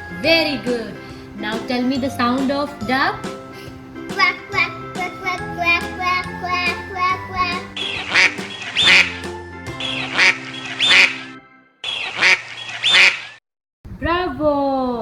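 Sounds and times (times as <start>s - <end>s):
children's music tune: 0.0s - 12.4s
duck quacking: 7.5s - 9.3s, 9.9s - 11.3s, 11.9s - 13.3s.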